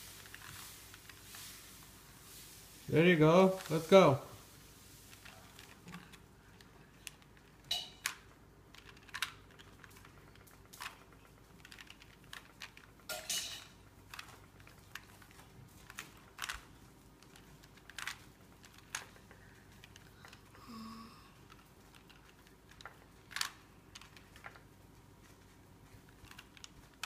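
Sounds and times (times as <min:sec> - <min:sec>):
puzzle cube plastic clicks: 0:05.1 - 0:13.2, 0:14.0 - 0:20.5, 0:21.4 - 0:24.7, 0:25.8 - 0:27.0.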